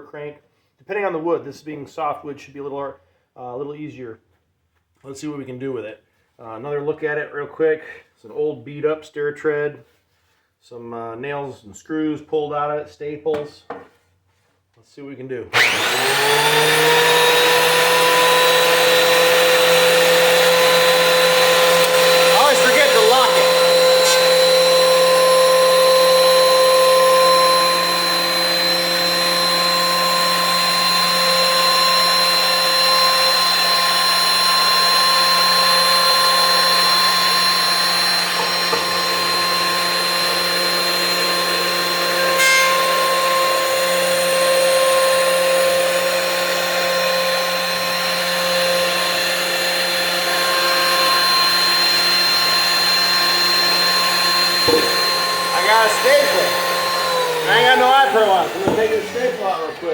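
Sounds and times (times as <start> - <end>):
thickness planer whining: 15.5 - 59.9.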